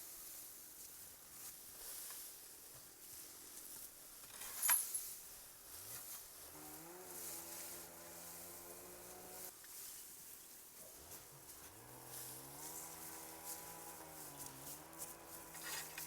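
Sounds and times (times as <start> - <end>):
small motor whining: 6.4 - 9.5, 10.9 - 16.0.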